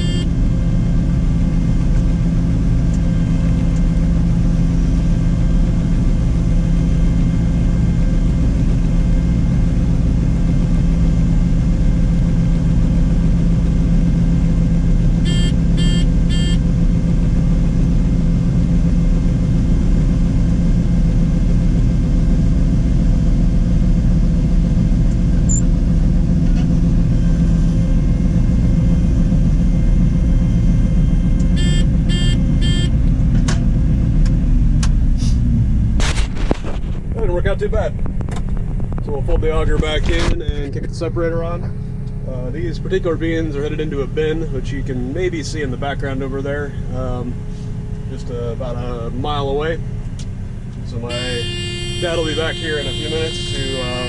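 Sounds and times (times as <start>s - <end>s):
quick electronic beeps: 0.0s - 0.2s, 31.6s - 32.9s
combine harvester running: 0.0s - 54.0s.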